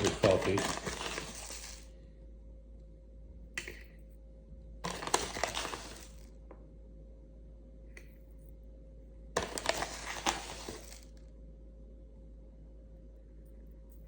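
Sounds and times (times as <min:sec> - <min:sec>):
ground coffee pouring: 0:00.0 - 0:01.9, 0:04.8 - 0:06.3, 0:09.4 - 0:11.1.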